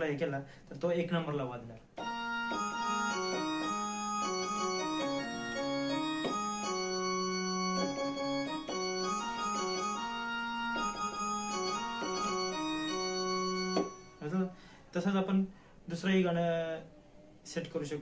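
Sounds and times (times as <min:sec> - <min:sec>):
keyboard organ melody: 0:02.0 - 0:14.5.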